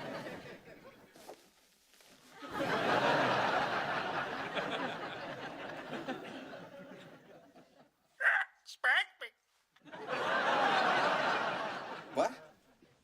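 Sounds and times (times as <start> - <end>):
studio audience laughter: 0.0 - 1.0, 2.4 - 7.9, 9.8 - 12.4.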